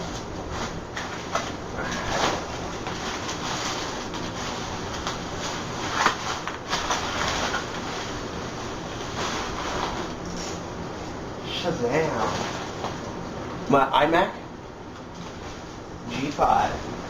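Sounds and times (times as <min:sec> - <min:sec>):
packaging rustling and crinkling: 0:00.0 - 0:10.7, 0:12.0 - 0:13.2
steady hiss: 0:00.0 - 0:17.0.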